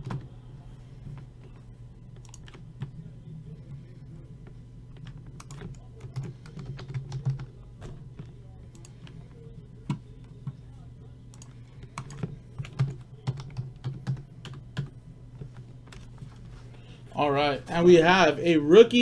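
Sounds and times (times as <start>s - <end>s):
steady low hum: 0.0s - 19.0s
computer keyboard key clicks: 2.2s - 2.6s.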